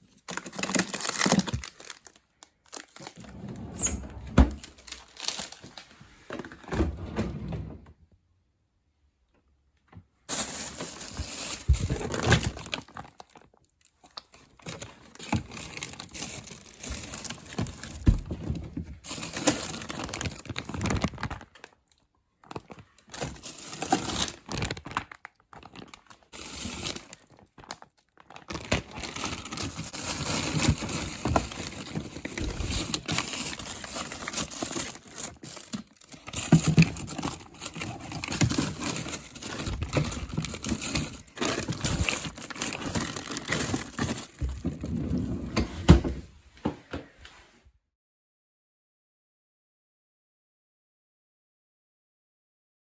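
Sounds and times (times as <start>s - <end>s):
plastic packaging crinkling: 0.0s - 3.4s, 4.6s - 5.9s, 10.3s - 18.4s, 19.0s - 44.8s.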